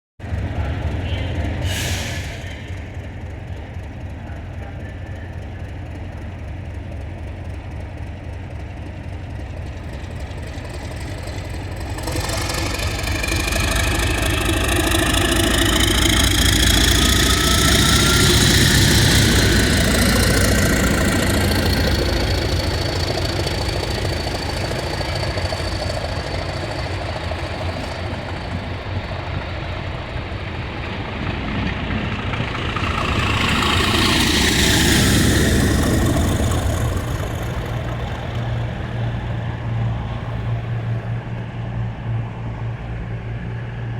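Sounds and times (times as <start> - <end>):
diesel locomotive engine: 0.2 - 43.9
turbocharger whistle: 11.7 - 27.1.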